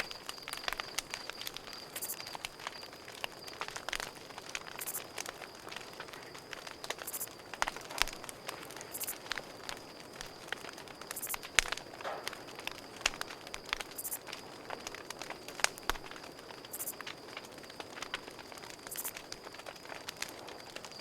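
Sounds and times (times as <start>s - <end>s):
buzzy insect chirps: 0.0s - 3.5s, 4.8s - 5.1s, 7.0s - 7.3s, 8.9s - 9.2s, 11.1s - 11.4s, 13.9s - 14.2s, 16.7s - 17.0s, 18.9s - 19.2s
campfire crackling and popping: 0.0s - 21.0s
high insect trill: 0.0s - 21.0s.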